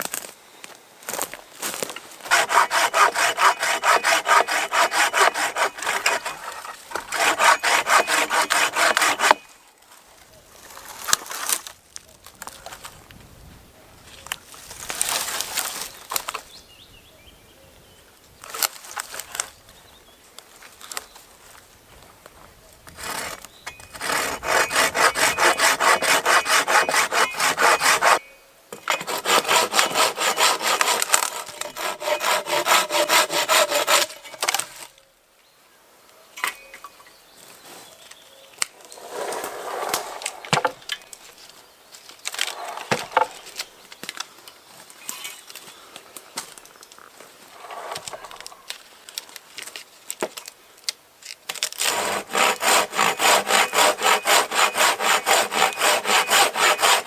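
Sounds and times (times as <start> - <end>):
hand saw cutting wood: 2.2 - 9.4, 22.9 - 28.2, 28.8 - 34.9, 38.8 - 40.8, 47.6 - 48.5, 51.7 - 57.0.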